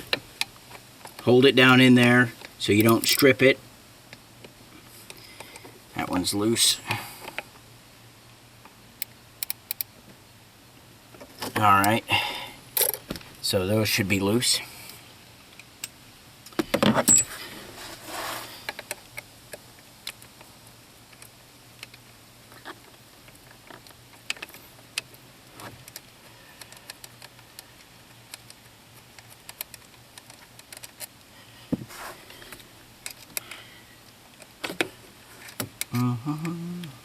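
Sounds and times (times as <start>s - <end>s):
metal tools and bolts clinking: 2.8s - 3.3s, 12.8s - 13.0s, 16.9s - 17.4s.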